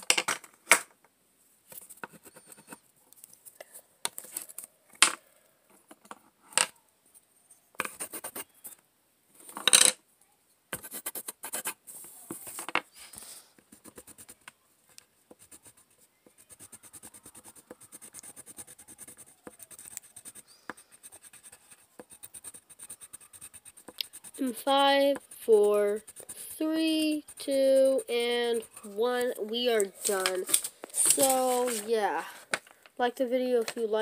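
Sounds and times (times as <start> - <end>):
coloring strokes scratching paper: 7.8 - 8.8, 10.8 - 14.4, 15.3 - 32.1
paper rustles: 29.8 - 32.7.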